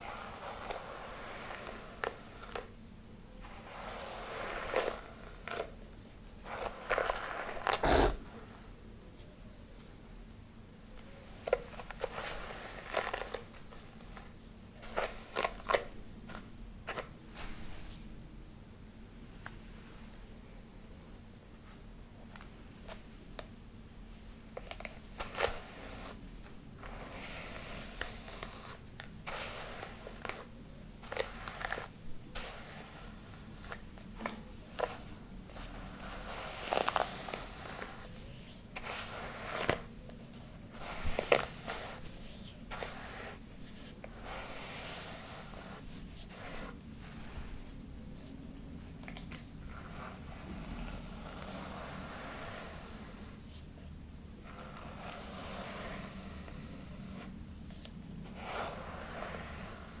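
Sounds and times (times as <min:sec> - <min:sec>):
hair being brushed: 0:06.5 - 0:08.6, 0:40.7 - 0:47.8.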